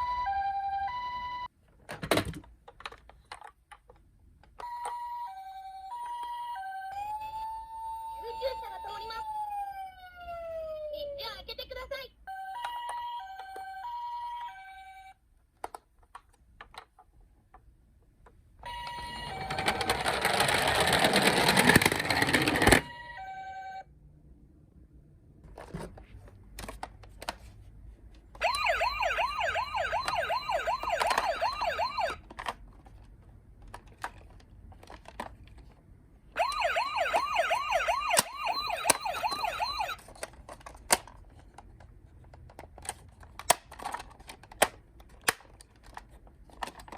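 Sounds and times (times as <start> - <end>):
two-tone toy siren: 0.0 - 1.5, 4.6 - 11.4, 12.2 - 15.2, 18.6 - 20.6, 22.6 - 23.9, 28.4 - 32.2, 36.4 - 40.1
fast-warbling siren wail: 6.8 - 11.0, 28.4 - 32.2, 36.4 - 40.0.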